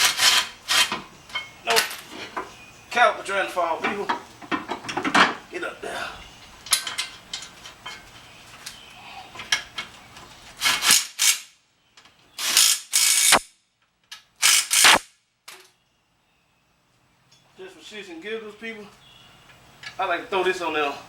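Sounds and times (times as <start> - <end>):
ratchet-like clicking: 12.4 - 13.5, 14.4 - 15.1.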